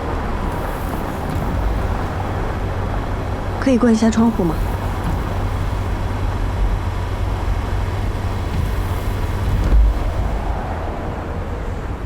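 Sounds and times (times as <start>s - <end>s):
car road and engine rumble: 0.0s - 12.0s
low thump: 4.6s - 11.0s.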